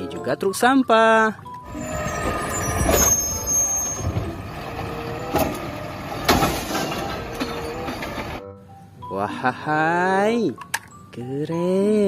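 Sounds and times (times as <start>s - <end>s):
truck engine rumble: 1.6s - 8.5s.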